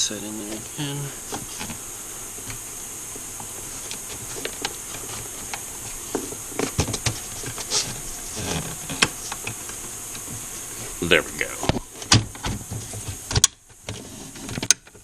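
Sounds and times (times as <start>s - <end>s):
steady high hiss: 0.0s - 15.0s.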